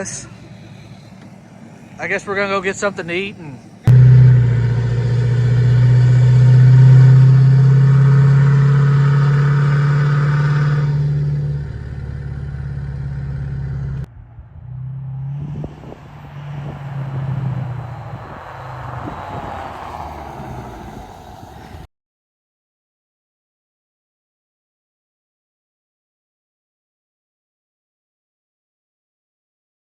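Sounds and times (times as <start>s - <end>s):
road noise: 0.0s - 21.9s
vehicle engine droning: 0.0s - 21.9s.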